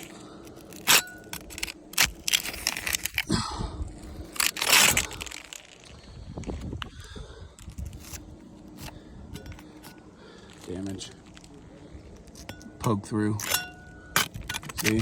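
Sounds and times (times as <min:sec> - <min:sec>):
roof shingles crackling and crunching: 0:00.0 - 0:03.3, 0:03.9 - 0:15.0.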